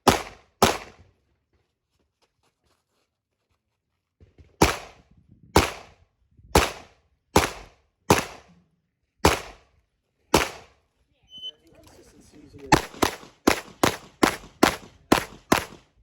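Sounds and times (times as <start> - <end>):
pistol shots with echo: 0.0 - 1.0, 4.6 - 5.0, 5.6 - 6.0, 6.6 - 8.5, 9.2 - 9.7, 10.3 - 10.7, 12.7 - 16.0.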